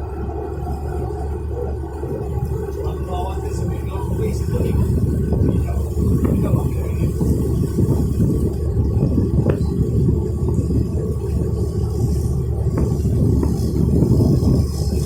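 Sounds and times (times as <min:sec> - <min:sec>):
ferry engine rumbling: 0:00.0 - 0:15.0.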